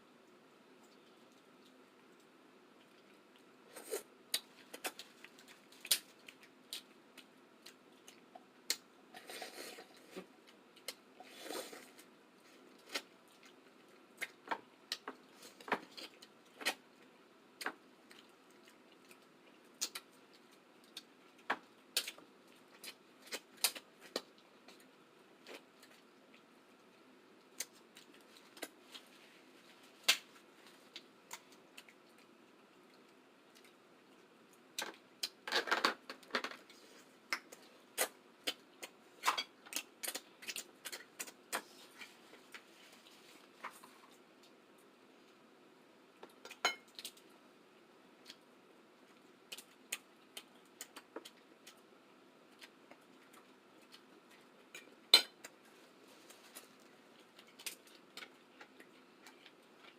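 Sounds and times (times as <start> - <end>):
mouth clicks and smacks eating: 17.6 - 24.9, 49.4 - 51.8.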